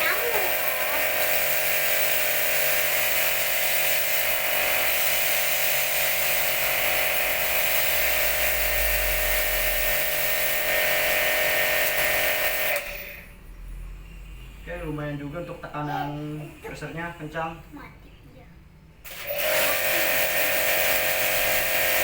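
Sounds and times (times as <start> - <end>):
water jet hissing: 0.0 - 6.0
pressure washer motor hum: 0.0 - 13.2, 19.0 - 22.0.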